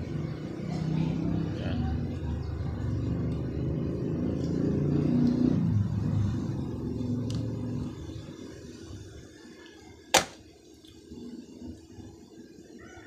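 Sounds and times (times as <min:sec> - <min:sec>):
engine running: 0:00.0 - 0:08.6.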